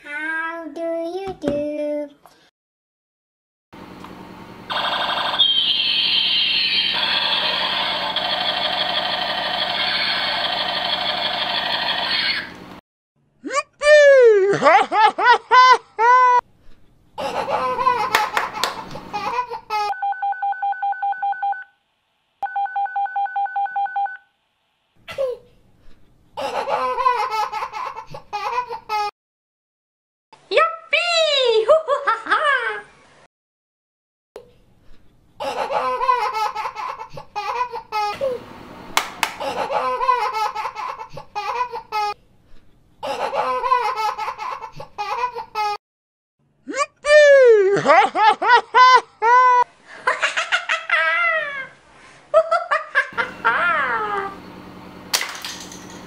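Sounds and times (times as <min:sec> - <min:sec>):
child giggling: 0:13.4 - 0:16.4, 0:17.2 - 0:20.0, 0:26.4 - 0:29.1, 0:31.6 - 0:32.9, 0:35.4 - 0:38.4, 0:39.4 - 0:42.2, 0:43.0 - 0:45.8, 0:46.7 - 0:51.8, 0:52.4 - 0:54.4.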